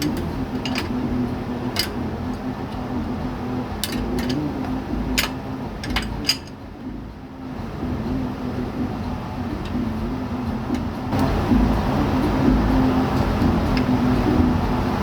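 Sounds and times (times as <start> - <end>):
hand tools clinking on metal: 0.0 - 1.1, 1.7 - 2.0, 3.8 - 6.6
steady low hum: 0.0 - 15.0.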